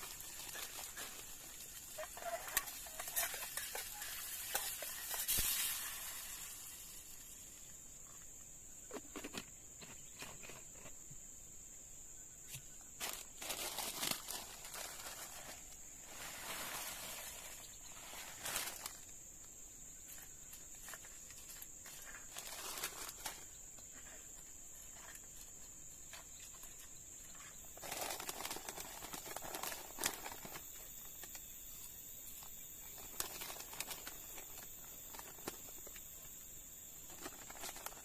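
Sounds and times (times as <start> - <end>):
high-pitched insect drone: 0.0 - 7.6
rustling and crackling: 0.0 - 11.1, 12.5 - 19.3, 20.0 - 36.2, 37.0 - 38.0.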